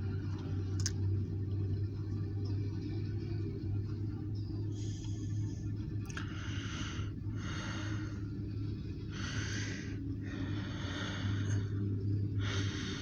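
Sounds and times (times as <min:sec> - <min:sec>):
steady low hum: 0:00.0 - 0:13.0
heavy breathing: 0:04.7 - 0:13.0.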